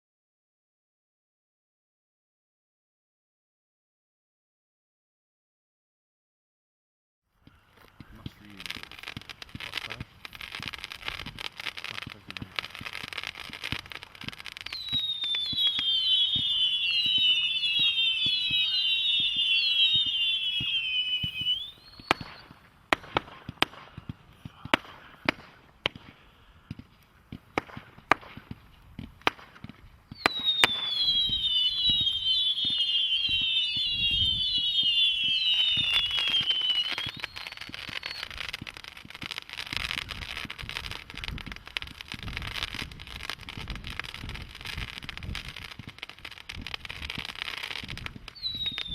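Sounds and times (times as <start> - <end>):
firework crackling hiss: 7.5 - 48.9
sharp firework bangs: 8.0 - 48.9
firework whistles falling in pitch: 12.9 - 23.4, 30.1 - 48.9.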